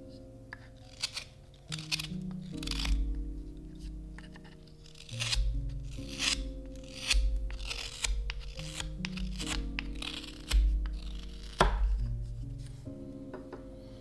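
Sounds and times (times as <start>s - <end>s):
knife scraping wood: 0.5s - 12.9s.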